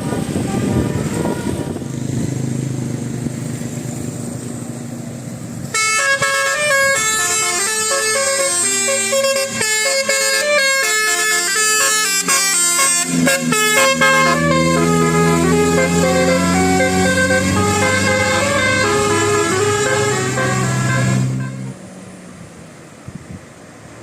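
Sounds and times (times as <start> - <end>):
multi-tone air horn melody: 0.0 - 1.8, 5.7 - 21.8
engine running: 0.0 - 23.1.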